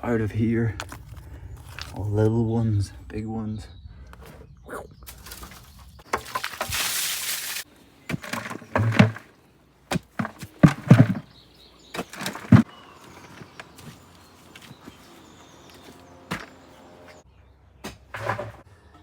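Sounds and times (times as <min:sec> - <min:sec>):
shovel scraping soil: 0:05.1 - 0:09.3, 0:09.9 - 0:11.3, 0:11.9 - 0:17.2, 0:17.9 - 0:18.6
tools striking stones: 0:09.9 - 0:11.2, 0:12.0 - 0:13.4.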